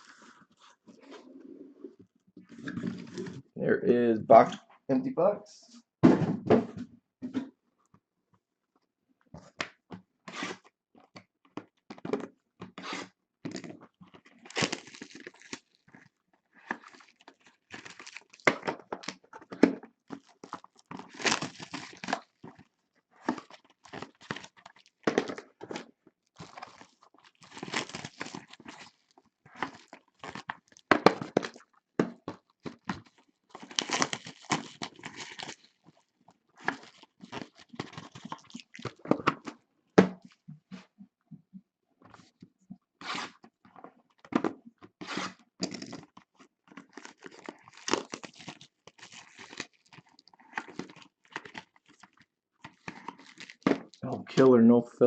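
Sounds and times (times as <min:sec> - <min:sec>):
wrappers tearing and crinkling: 0:14.4 - 0:15.8, 0:16.6 - 0:19.2, 0:20.1 - 0:22.5, 0:23.2 - 0:25.8, 0:26.4 - 0:31.7, 0:32.6 - 0:39.1, 0:46.8 - 0:54.0.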